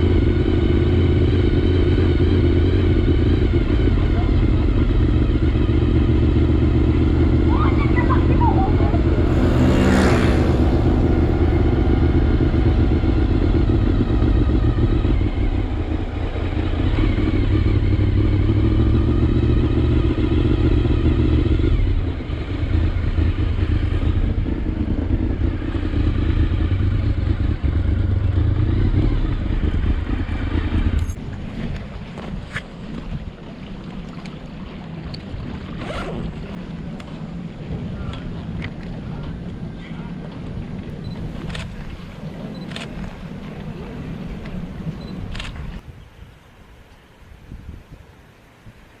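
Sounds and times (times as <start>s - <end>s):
motorcycle engine running: 0.0s - 31.2s.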